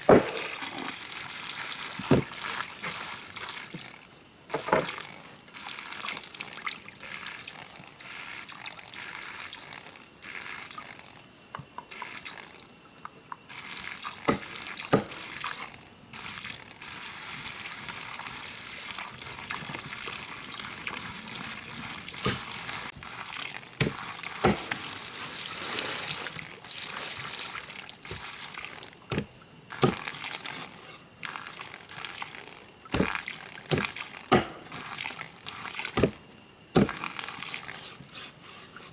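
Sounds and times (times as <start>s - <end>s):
water running and splashing: 0.0s - 11.1s, 13.5s - 37.9s
sharp knocks: 33.0s - 34.7s.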